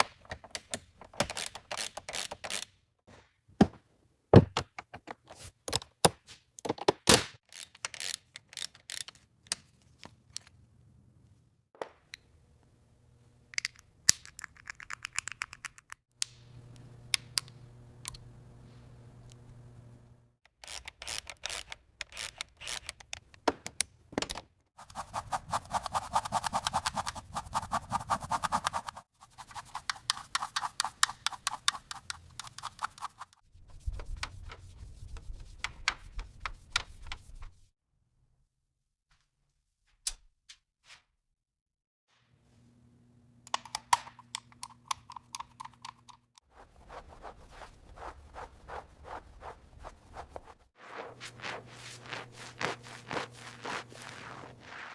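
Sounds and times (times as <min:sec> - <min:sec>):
ticking and scraping: 0:24.8 - 0:33.4.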